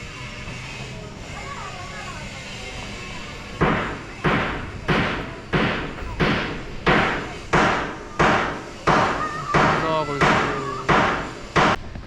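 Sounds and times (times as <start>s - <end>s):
heavy hammer blows ringing: 3.5s - 11.8s.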